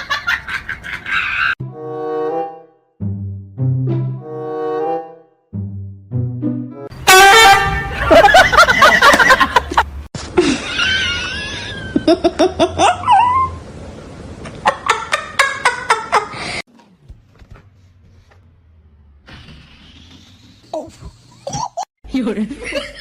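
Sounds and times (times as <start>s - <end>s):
people laughing: 7.8s - 13.0s.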